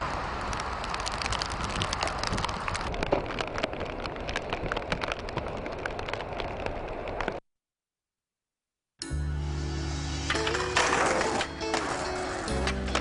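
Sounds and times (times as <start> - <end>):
rain on a hard surface: 0.0 - 7.4.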